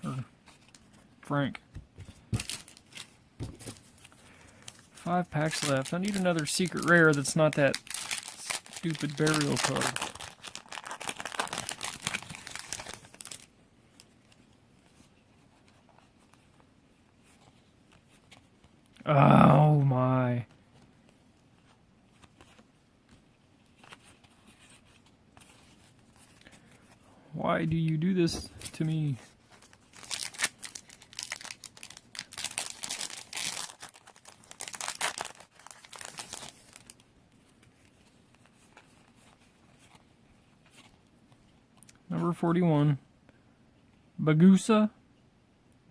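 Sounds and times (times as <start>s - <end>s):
foil wrapper tearing and crinkling: 2.4s - 3.1s, 4.8s - 13.5s, 29.5s - 37.0s.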